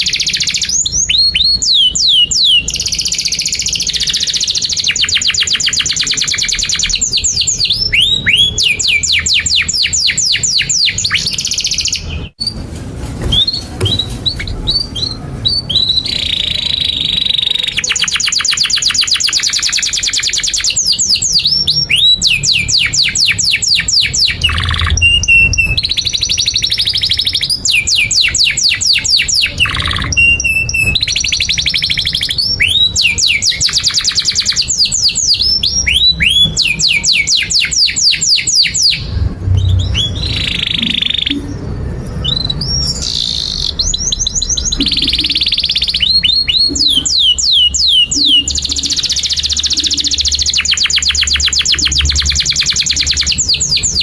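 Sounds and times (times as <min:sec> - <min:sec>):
canary singing: 0:00.0 - 0:54.0.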